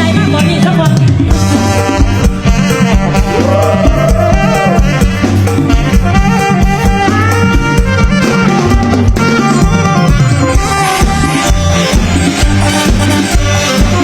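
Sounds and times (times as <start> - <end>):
drum-kit beat: 0.0 - 14.0
pitch-bending melody line: 1.3 - 14.0.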